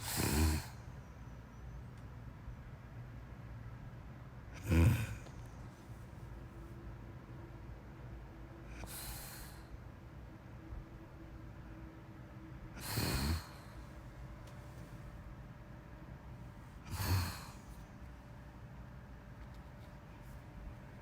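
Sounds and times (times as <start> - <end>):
rattly snore: 0.0 - 0.9, 4.6 - 5.6, 12.8 - 13.8, 16.9 - 17.8
person breathing slowly: 8.7 - 9.9, 12.8 - 14.0, 16.8 - 17.9.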